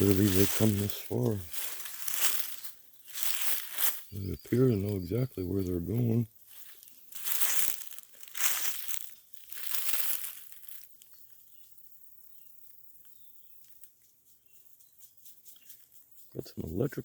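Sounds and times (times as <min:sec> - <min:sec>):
footsteps through dry leaves: 0:00.0 - 0:11.3.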